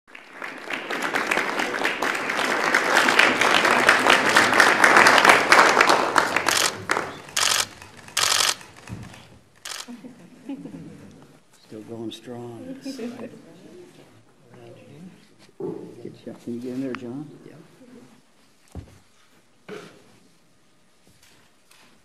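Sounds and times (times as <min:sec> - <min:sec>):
audience applauding: 0:00.1 - 0:08.6.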